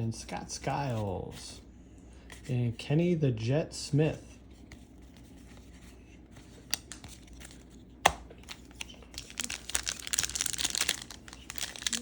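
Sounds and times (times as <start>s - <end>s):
wrapper crinkling and tearing: 8.4s - 12.0s.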